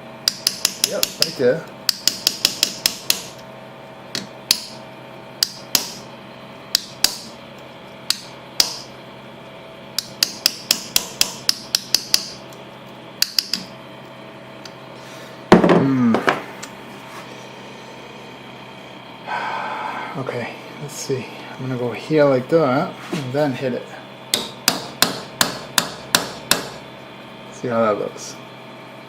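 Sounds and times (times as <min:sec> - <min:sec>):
person grunting: 0:15.6 - 0:16.4.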